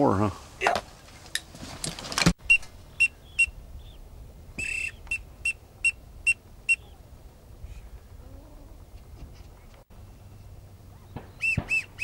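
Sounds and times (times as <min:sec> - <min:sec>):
duck whistle call toots: 0:04.6 - 0:07.0, 0:11.4 - 0:12.0.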